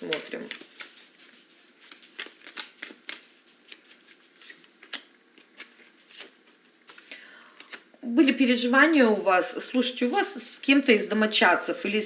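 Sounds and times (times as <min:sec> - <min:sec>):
cards being shuffled: 0:00.0 - 0:07.9.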